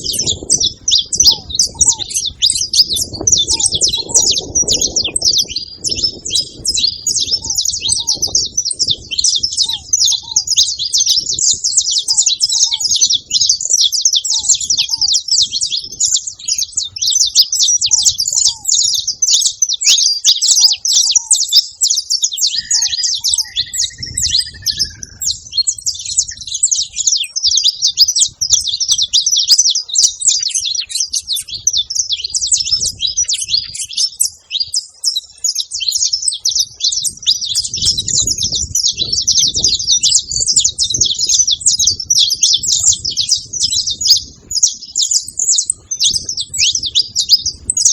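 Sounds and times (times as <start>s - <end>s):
finches chirping: 0.0s - 47.9s
falling whistles: 22.4s - 25.3s.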